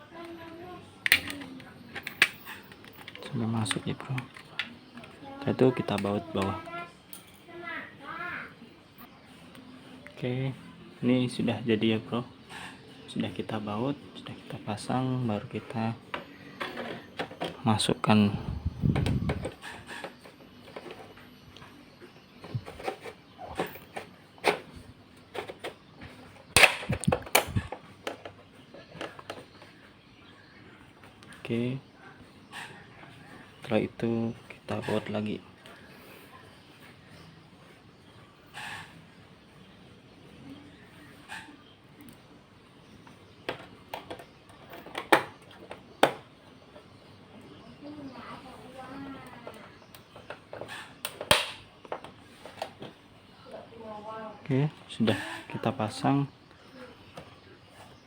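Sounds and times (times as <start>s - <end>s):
plastic and metal parts clicking: 1.0s - 5.2s
sharp plastic clacks: 1.0s - 5.2s, 50.0s - 52.7s.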